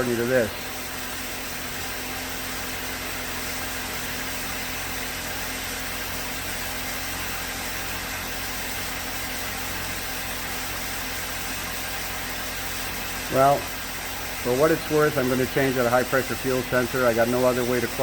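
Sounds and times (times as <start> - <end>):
car engine idling: 10.9 - 18.0.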